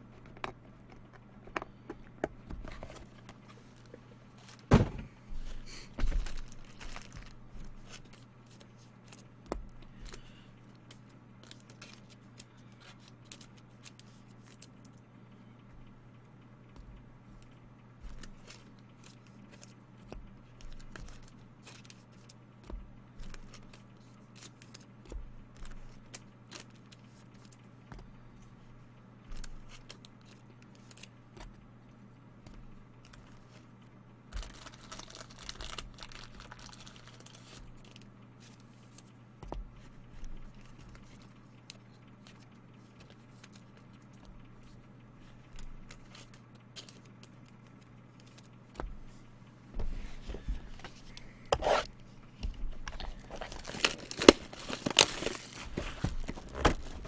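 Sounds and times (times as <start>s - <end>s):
wrapper tearing and crinkling: 6.2s - 8.2s, 34.4s - 38.0s, 52.8s - 57.0s.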